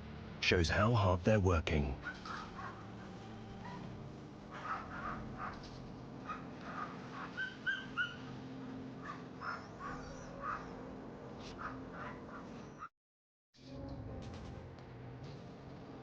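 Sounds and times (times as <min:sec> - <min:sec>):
huskies whining and yipping: 0:02.0 - 0:10.8, 0:11.4 - 0:12.9.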